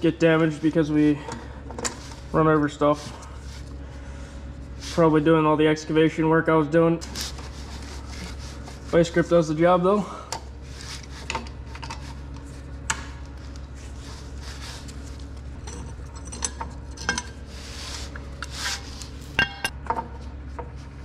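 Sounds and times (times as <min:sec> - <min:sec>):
steady low hum: 0:00.0 - 0:21.0
metal hand tools clinking and scraping: 0:15.6 - 0:17.4.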